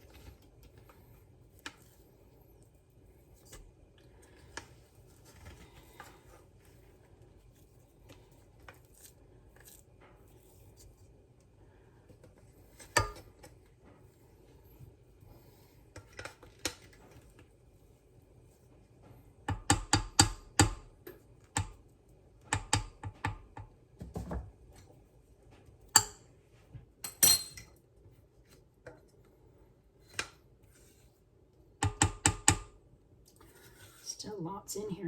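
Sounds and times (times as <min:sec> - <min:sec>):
utensil scraping a pot: 0:33.4 - 0:34.3.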